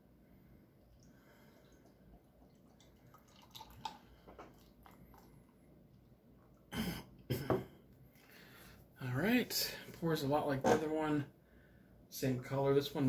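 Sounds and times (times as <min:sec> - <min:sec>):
beer pouring into a glass: 0:00.8 - 0:06.1.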